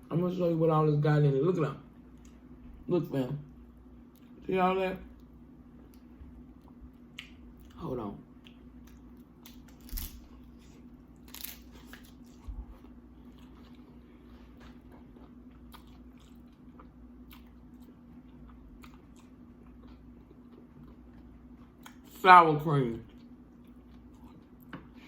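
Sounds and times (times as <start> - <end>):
crunching and chewing chips: 8.4 - 22.2, 22.9 - 25.0.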